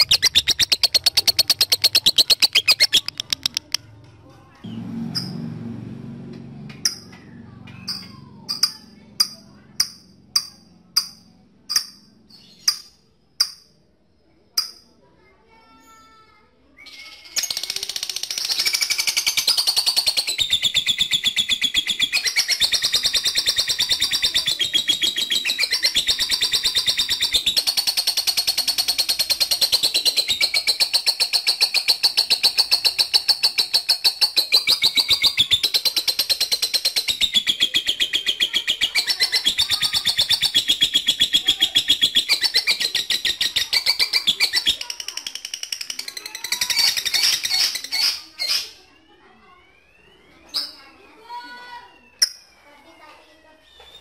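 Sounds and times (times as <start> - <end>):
lovebird chattering trill: 0.0 - 3.8, 17.3 - 48.8
lovebird squawking: 0.0 - 3.8, 18.6 - 45.0, 46.2 - 48.8.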